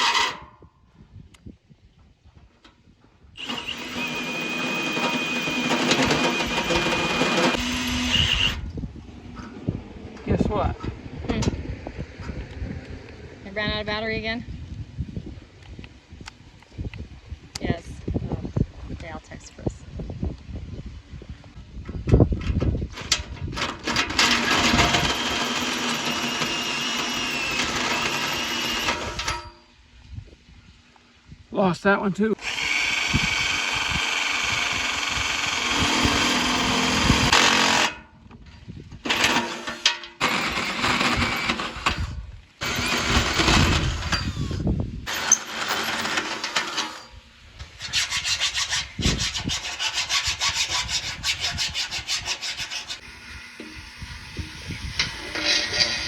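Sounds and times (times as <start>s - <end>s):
power tool motor whining: 0.0s - 0.4s, 3.4s - 8.7s, 23.0s - 29.5s, 32.4s - 38.0s, 39.0s - 47.1s, 52.0s - 56.0s.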